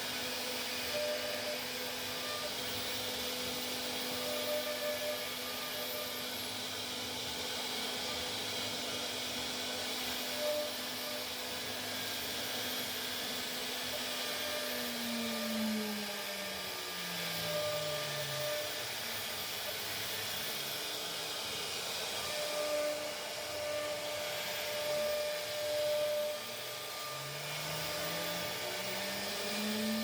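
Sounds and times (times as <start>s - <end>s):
router spindle cutting plastic: 0.0s - 30.0s.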